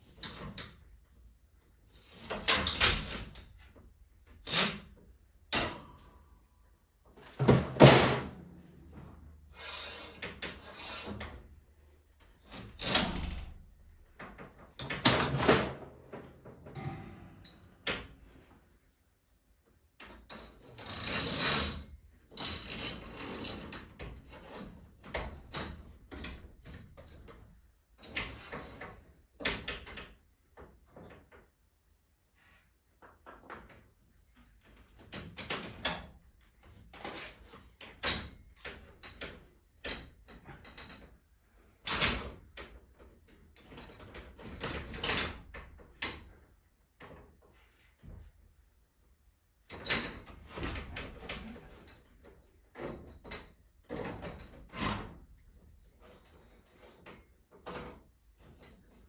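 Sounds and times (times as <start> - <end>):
metal clanks and clicks: 14.1 - 18.5
sharp metal clank: 16.7 - 18.3.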